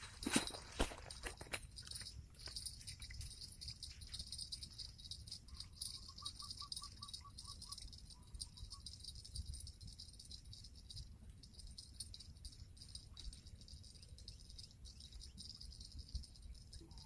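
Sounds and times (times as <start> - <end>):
quick chirps: 1.8 - 10.8.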